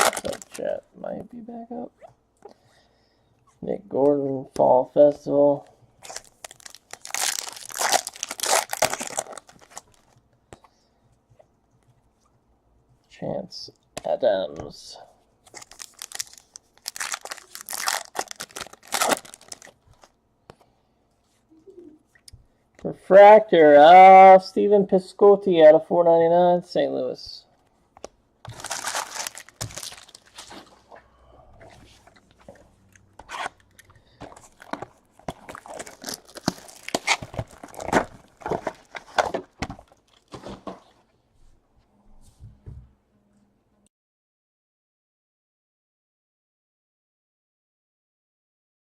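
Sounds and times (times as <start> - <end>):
cards rustling and snapping: 0.0 - 0.6, 6.1 - 10.2, 15.5 - 20.1, 28.0 - 30.7, 33.2 - 40.4
foil wrapper crinkling and tearing: 0.0 - 0.6, 6.0 - 10.2, 15.5 - 20.1, 28.5 - 30.7, 34.3 - 40.3
cards being handled: 0.0 - 0.7.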